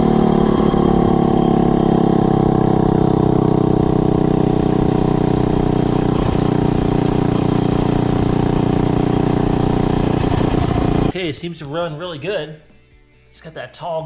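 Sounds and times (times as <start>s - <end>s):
minibike engine running: 0.0s - 11.1s.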